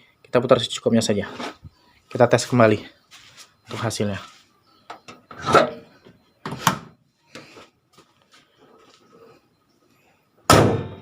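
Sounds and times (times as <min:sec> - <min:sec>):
car hood slamming shut: 0:10.5 - 0:11.0.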